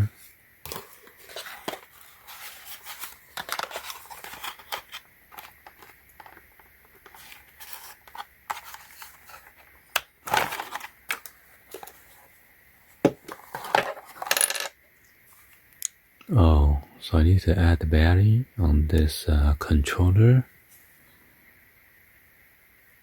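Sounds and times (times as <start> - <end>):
scrape: 0.2 - 4.9
packaging rustling: 0.7 - 12.3.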